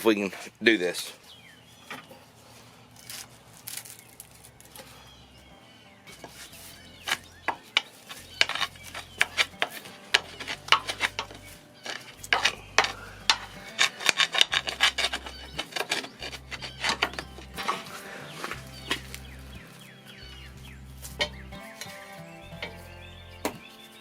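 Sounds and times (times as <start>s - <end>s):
hand tools scraping metal: 6.1s - 23.0s.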